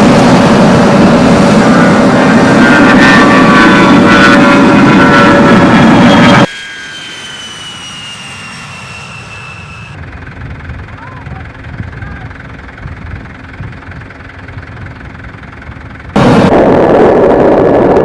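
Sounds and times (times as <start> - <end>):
jet whine falling in pitch: 0.0 - 10.0, 16.2 - 18.0
jet engines roaring: 0.0 - 18.0.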